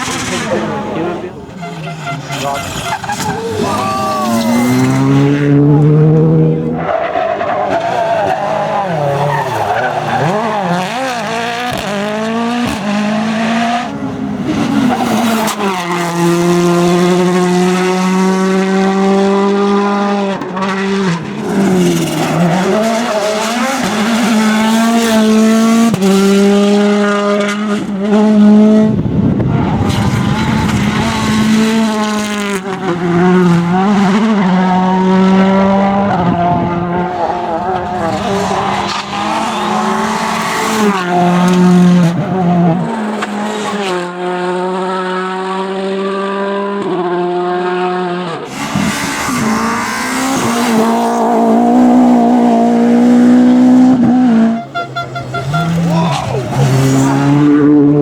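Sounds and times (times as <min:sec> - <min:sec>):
tyres squealing and skidding: 0:00.0 - 0:06.0, 0:06.6 - 0:11.8, 0:20.6 - 0:25.2, 0:37.1 - 0:43.8, 0:54.3 - 0:57.6
rally car engines revving: 0:00.0 - 0:58.0.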